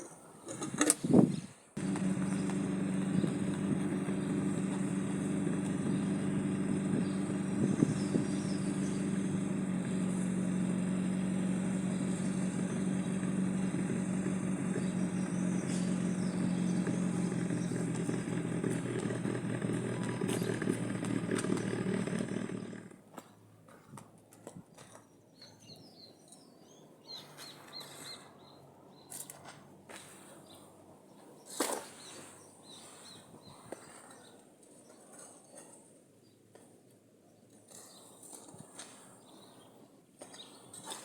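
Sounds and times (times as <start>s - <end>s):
machine humming: 1.8s - 22.9s.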